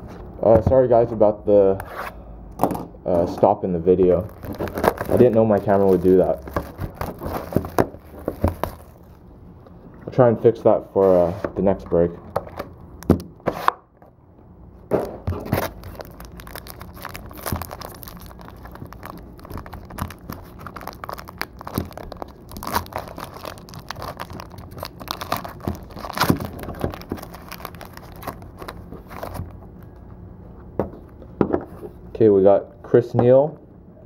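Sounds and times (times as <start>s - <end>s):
packaging tearing and crinkling: 4.1s - 9.2s, 15.2s - 29.6s
cards clicking and crunching: 4.2s - 9.0s, 15.0s - 29.6s.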